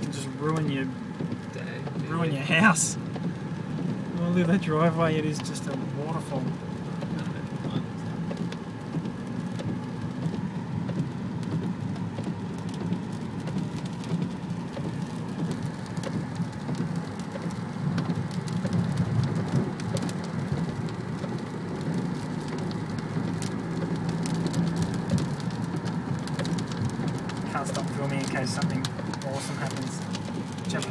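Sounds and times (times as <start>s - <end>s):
car engine humming low: 0.0s - 30.9s
rain pattering on a car: 0.0s - 30.9s.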